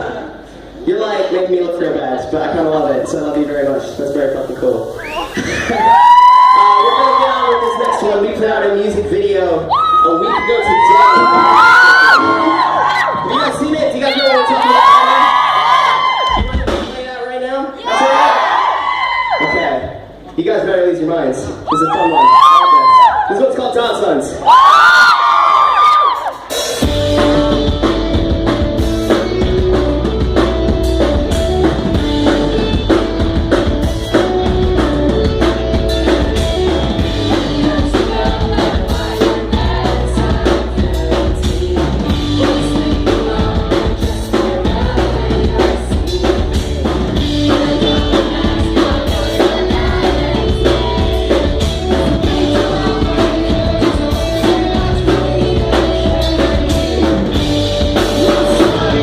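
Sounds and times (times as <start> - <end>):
bass: 0.0 - 59.0
drum kit: 10.4 - 13.8, 16.1 - 17.5, 25.6 - 59.0
electric guitar riff: 26.8 - 59.0
person singing: 37.0 - 59.0.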